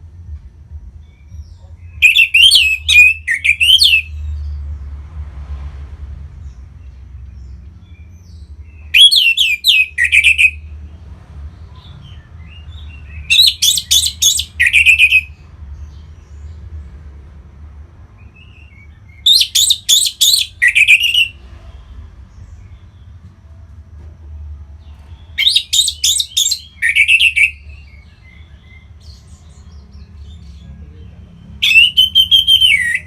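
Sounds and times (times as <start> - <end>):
steady low hum: 0.0 - 2.0
bird warbling song: 1.0 - 4.5, 7.4 - 10.6, 11.8 - 16.5, 18.2 - 21.4, 24.9 - 30.8.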